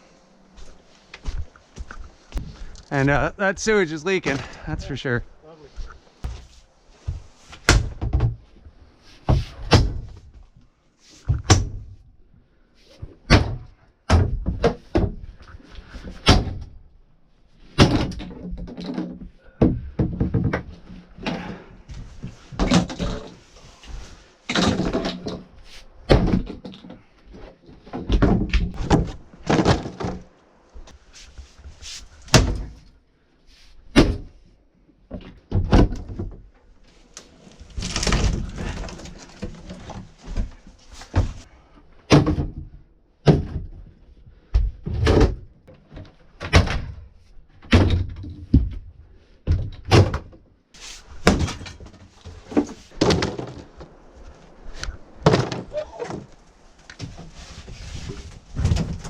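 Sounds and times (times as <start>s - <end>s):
sledgehammer thuds on wood: 9.3s - 10.2s, 32.3s - 32.8s, 42.1s - 43.8s, 55.2s - 56.3s
splintering wood clattering: 55.2s - 57.1s.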